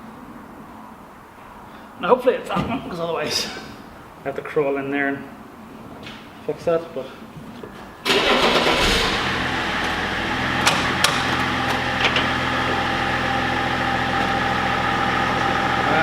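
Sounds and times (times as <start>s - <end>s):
car engine starting and idling: 8.0s - 16.0s.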